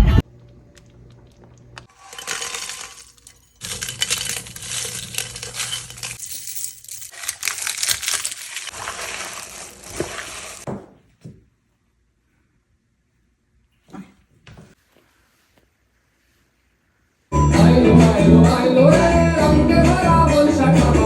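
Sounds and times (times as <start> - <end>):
small hard pieces clinking: 1.8 - 10.7.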